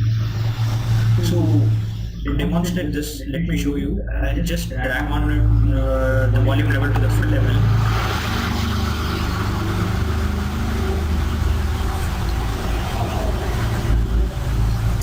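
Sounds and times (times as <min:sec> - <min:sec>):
road traffic rumble: 0:04.8 - 0:15.0.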